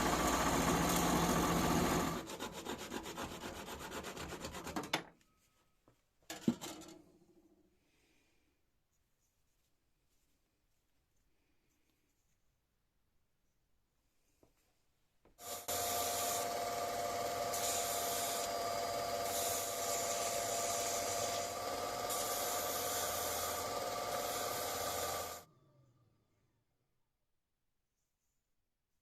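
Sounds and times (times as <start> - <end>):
grinder motor whine and grinding hiss: 0.0 - 2.2, 15.4 - 25.4.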